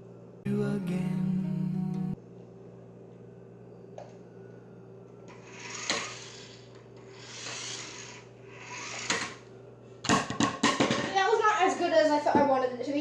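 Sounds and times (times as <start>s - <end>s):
toy car whirring across floor: 5.3s - 9.4s.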